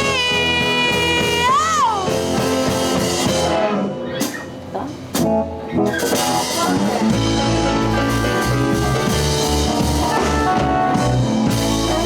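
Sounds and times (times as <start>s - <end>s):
blues band playing: 0.0s - 12.0s
electric bass line: 5.2s - 12.0s.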